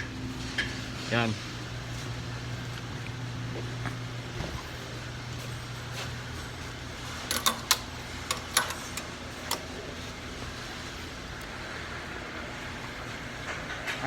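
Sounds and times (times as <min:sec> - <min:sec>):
steady low hum: 0:00.0 - 0:14.0
sharp metallic clicks and knocks: 0:07.3 - 0:09.7.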